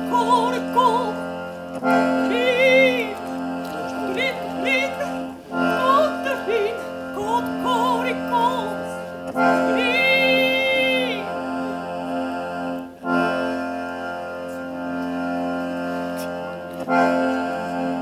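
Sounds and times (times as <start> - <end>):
person singing: 0.0 - 11.9
accordion chords: 0.0 - 18.0.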